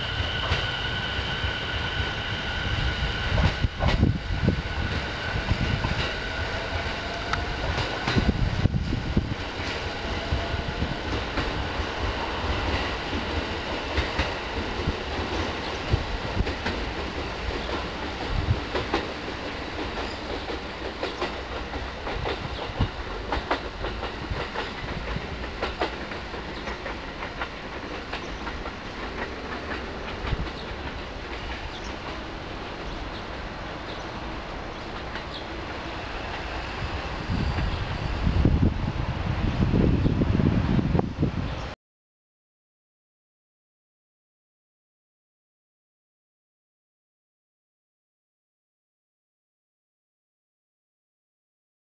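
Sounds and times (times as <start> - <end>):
train wheels clattering over joints: 12.7 - 33.2, 34.8 - 36.7.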